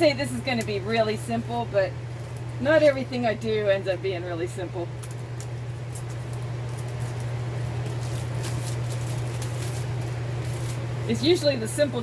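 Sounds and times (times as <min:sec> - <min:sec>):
steady low hum: 0:00.0 - 0:12.0
hands scratching and rustling: 0:05.0 - 0:11.4.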